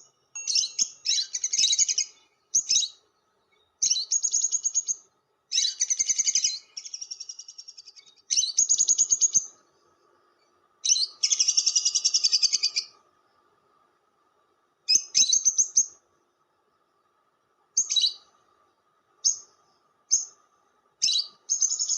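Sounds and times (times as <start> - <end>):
lovebird chattering: 0.0 - 3.0, 3.8 - 9.5, 10.8 - 13.0, 14.9 - 16.0, 17.8 - 18.2, 21.0 - 21.9.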